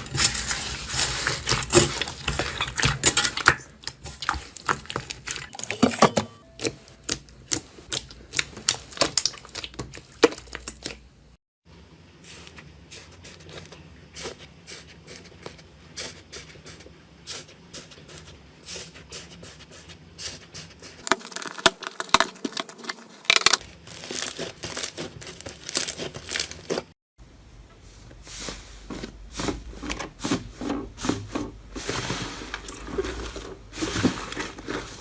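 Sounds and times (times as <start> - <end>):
slime crackling and popping: 6.6 - 11.1, 21.0 - 26.8.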